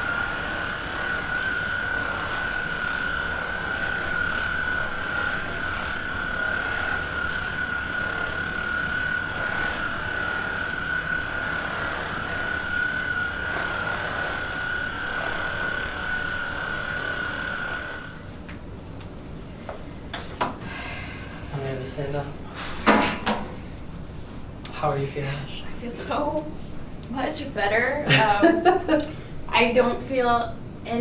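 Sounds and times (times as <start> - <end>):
massage gun whining: 0.0 - 19.1.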